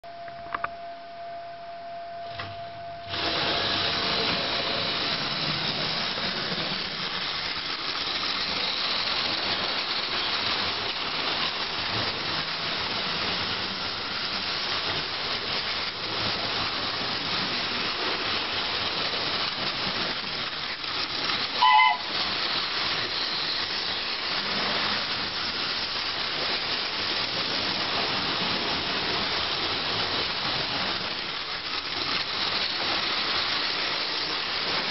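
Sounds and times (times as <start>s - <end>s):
short train whistle: 0.1s - 3.2s, 21.6s - 22.2s
model steam locomotive hissing: 3.0s - 34.9s.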